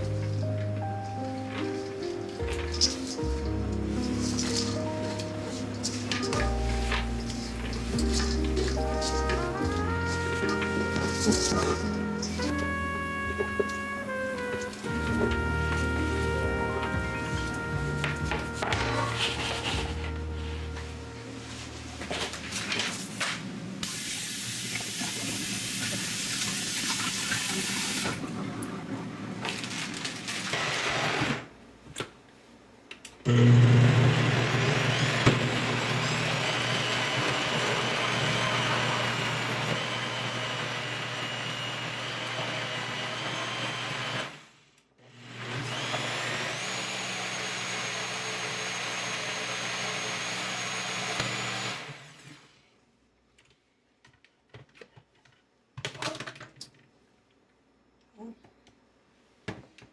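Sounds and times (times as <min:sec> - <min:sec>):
electric blender running: 0:33.3 - 0:44.5, 0:45.2 - 0:52.4.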